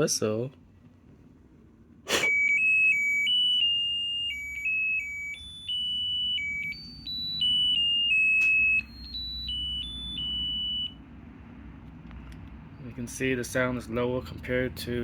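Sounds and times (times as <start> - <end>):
electronic beeping tune: 2.2 - 11.0.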